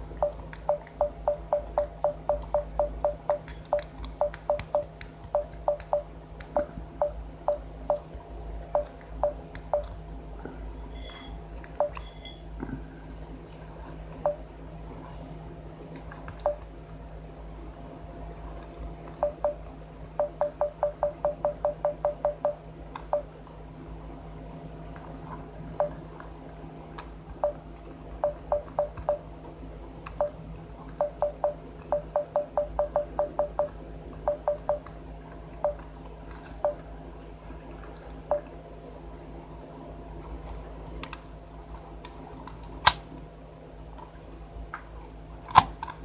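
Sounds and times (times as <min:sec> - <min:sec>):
low steady hum: 0:00.0 - 0:46.0
short electronic beeps: 0:00.2 - 0:08.1, 0:08.8 - 0:09.9, 0:11.0 - 0:12.4, 0:19.2 - 0:19.6, 0:20.2 - 0:23.3, 0:28.2 - 0:29.2, 0:31.0 - 0:34.9.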